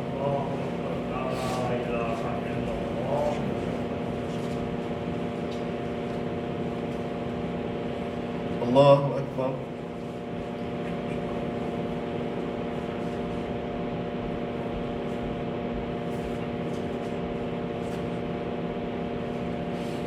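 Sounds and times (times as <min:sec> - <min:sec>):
room hum and hiss with tones: 0:00.0 - 0:20.0.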